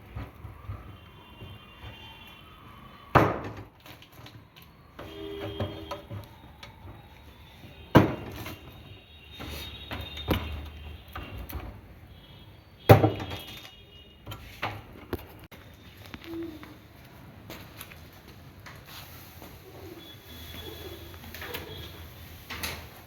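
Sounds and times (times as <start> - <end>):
knocks and clatter of hard objects: 3.1 - 7.0, 7.9 - 12.0, 12.9 - 15.6.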